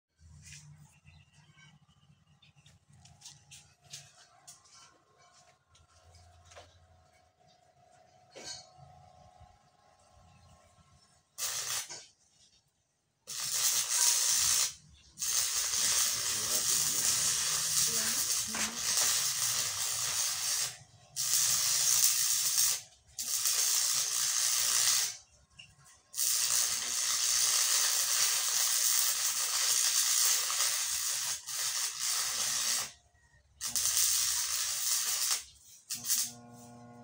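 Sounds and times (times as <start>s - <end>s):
welding arc hissing and crackling: 11.4s - 12.0s, 13.3s - 25.2s, 26.1s - 33.0s, 33.6s - 36.5s.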